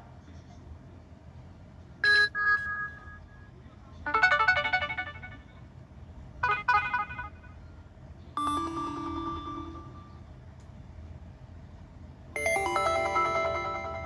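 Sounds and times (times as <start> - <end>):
long single notification tone: 8.4 - 10.2, 12.4 - 14.0
two-note notification chime: 8.4 - 10.2, 12.4 - 14.0.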